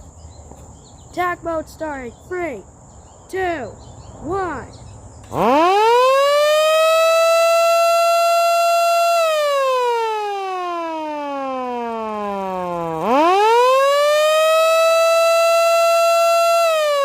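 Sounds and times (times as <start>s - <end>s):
siren wailing: 5.3s - 17.0s.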